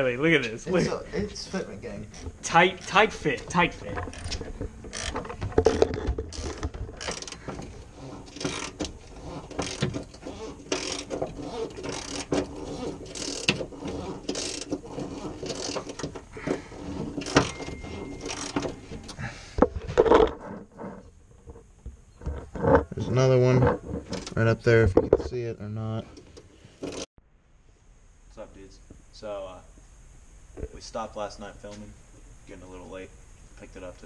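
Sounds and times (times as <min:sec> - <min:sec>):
ratchet wrench clicking: 0:10.7 - 0:11.1, 0:11.9 - 0:14.8, 0:18.2 - 0:18.7.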